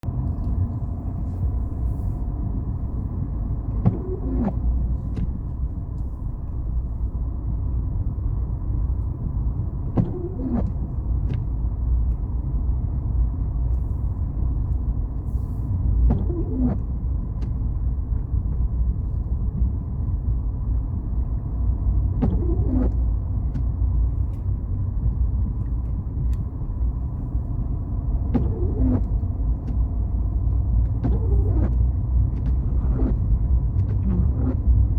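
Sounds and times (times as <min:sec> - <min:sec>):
car cabin rumble: 0:00.0 - 0:34.9
windscreen wipers swishing: 0:00.0 - 0:34.9
wiper clicks: 0:03.6 - 0:06.6, 0:25.6 - 0:34.6.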